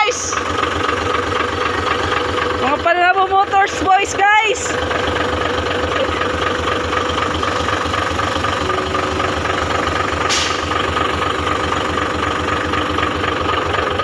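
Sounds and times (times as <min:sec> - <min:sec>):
diesel engine idling: 0:00.0 - 0:14.0
short hiss: 0:10.3 - 0:10.7.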